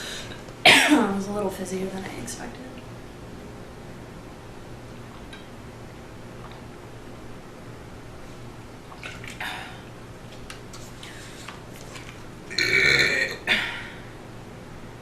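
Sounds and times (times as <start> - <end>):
woman burping: 12.5 - 14.0.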